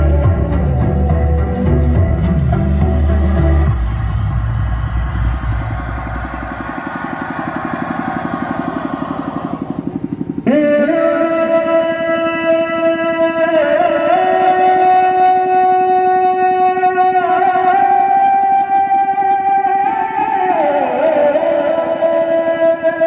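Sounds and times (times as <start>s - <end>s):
rhythmic pulsing buzz: 0.0s - 22.7s
music through outdoor sound system: 0.0s - 23.0s.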